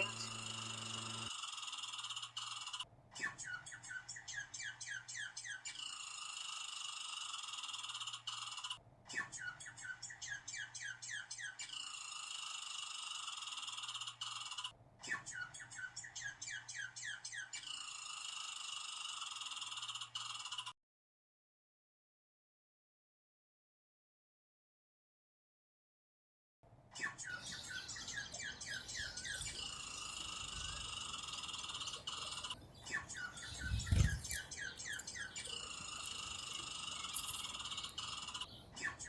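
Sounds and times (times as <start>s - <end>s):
high buzzing background: 0.0s - 1.3s
squirrel chattering: 28.6s - 38.5s.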